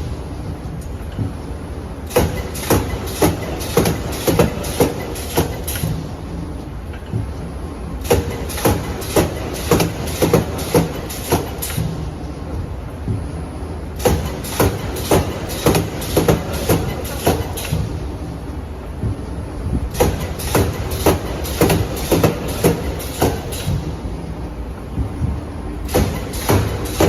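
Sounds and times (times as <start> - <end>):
low machine hum: 0.0 - 27.0
welding machine clanks: 2.1 - 6.1, 8.0 - 12.0, 14.0 - 18.0, 19.9 - 24.0, 25.8 - 27.0.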